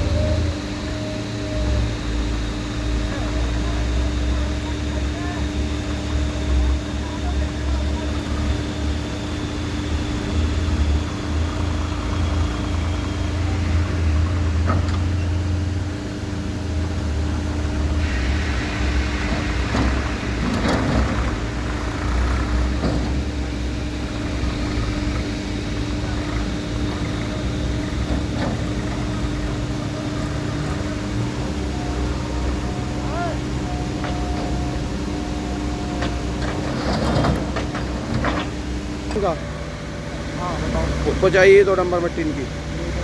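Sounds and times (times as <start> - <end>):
diesel engine running: 0.0 - 43.0.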